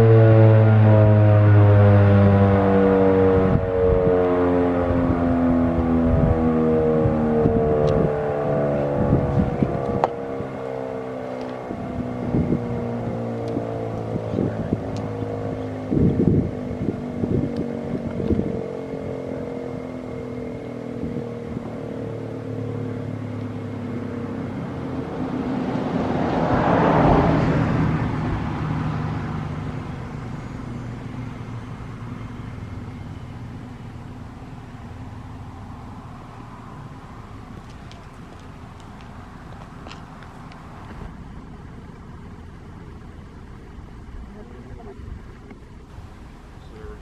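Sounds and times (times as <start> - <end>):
warning siren winding down: 0.0 - 47.0
wind buffeting microphone: 3.1 - 10.7, 11.6 - 19.9, 20.5 - 22.0.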